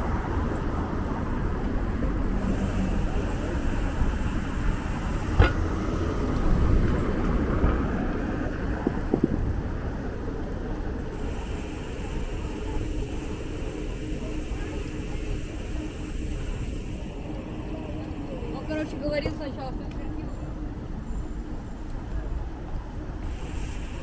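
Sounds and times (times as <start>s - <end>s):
city street traffic rumble: 0.0s - 24.0s
sharp knocks: 5.4s - 5.8s.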